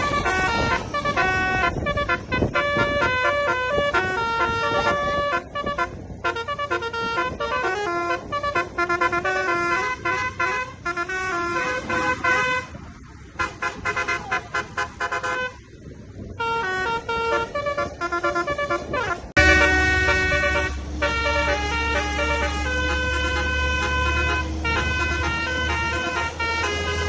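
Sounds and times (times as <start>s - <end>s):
bus musical horn playing tune: 0.0s - 27.0s.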